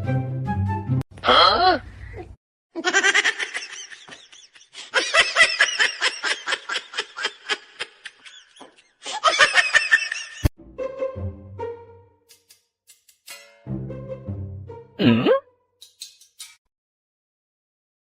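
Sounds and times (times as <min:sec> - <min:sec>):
high-pitched laughter: 0:02.8 - 0:10.4.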